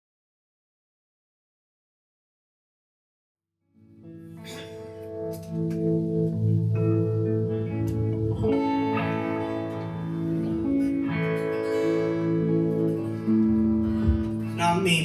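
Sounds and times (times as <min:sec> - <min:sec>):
string instruments playing chords: 0:04.2 - 0:15.0.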